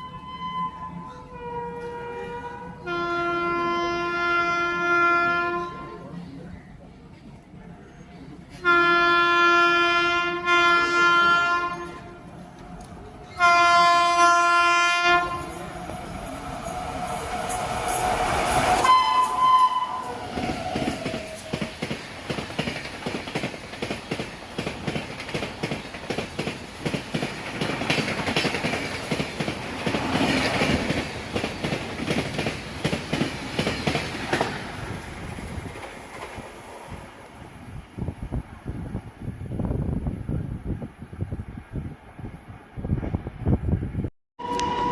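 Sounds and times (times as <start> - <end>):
train horn blasts: 0.0 - 6.0, 8.5 - 12.4, 13.3 - 15.6, 18.8 - 21.5, 44.4 - 44.9
train rushing past: 8.4 - 44.9.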